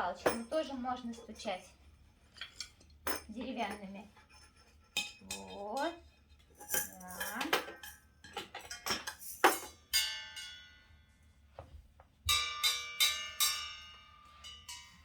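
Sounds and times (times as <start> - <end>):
sticks striking ringing metal: 12.3 - 15.0.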